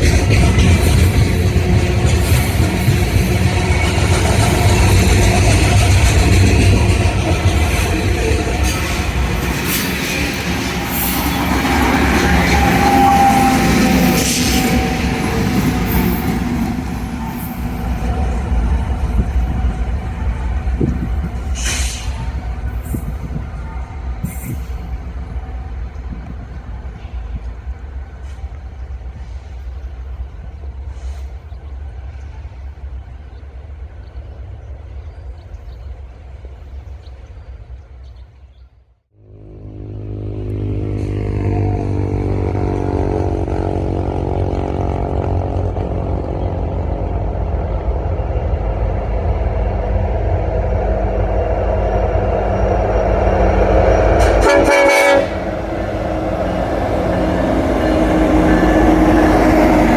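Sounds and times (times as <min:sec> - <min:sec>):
diesel locomotives rumbling: 0:00.0 - 0:59.9
train air horn: 0:08.7 - 0:17.8, 0:39.2 - 0:45.6, 0:53.6 - 0:59.9.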